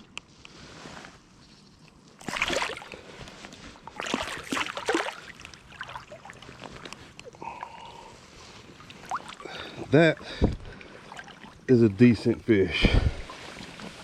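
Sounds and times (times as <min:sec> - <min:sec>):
water splashing: 0:02.2 - 0:03.2, 0:03.8 - 0:14.0.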